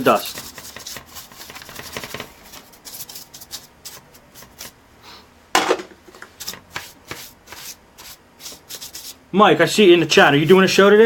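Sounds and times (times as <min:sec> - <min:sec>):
brush sweeping plastic: 0:00.0 - 0:04.8, 0:06.2 - 0:09.2.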